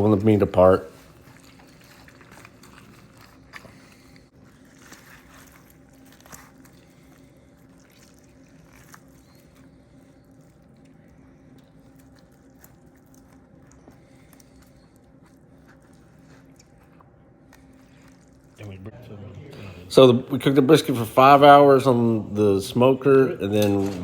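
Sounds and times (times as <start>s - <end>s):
low steady hum: 0.0s - 24.0s
meat squishing being pulled apart: 0.9s - 18.6s.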